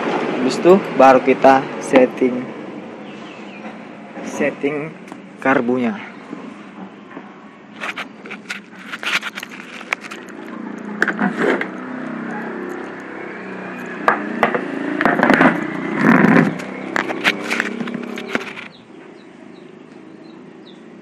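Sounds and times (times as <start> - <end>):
handling clicks and knocks: 14.1 - 18.8.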